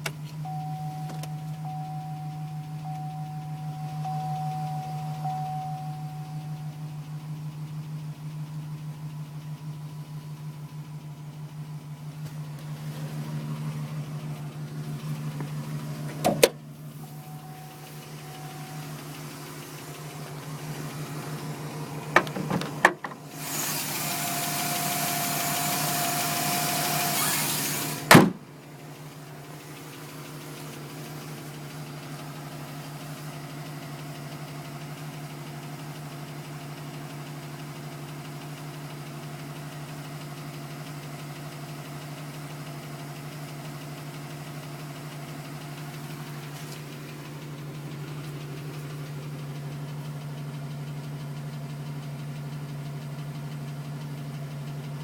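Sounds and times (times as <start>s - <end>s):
pickup engine idling with ticking: 0.0s - 55.0s
loud thump: 28.1s - 28.4s.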